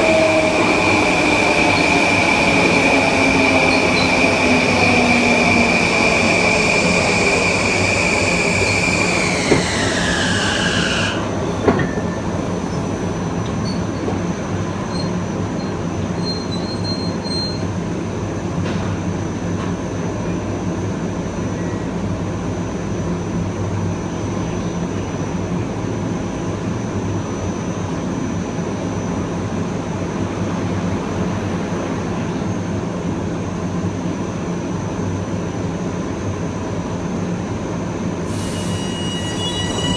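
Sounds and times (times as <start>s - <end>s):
train traction motors whining: 0.0s - 11.8s.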